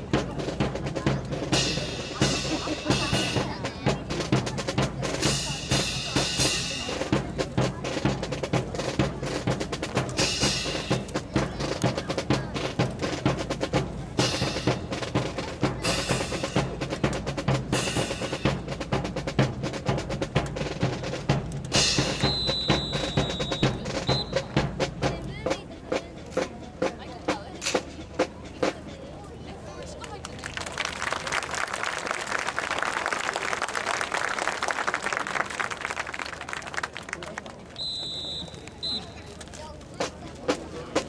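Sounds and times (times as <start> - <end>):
drum music with cymbal crashes: 0.0 - 29.0.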